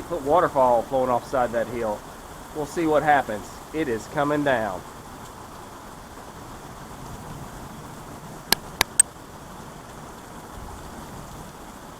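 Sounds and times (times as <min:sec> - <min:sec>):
heavy rain: 0:00.0 - 0:11.9
sharp clicks: 0:08.5 - 0:09.1.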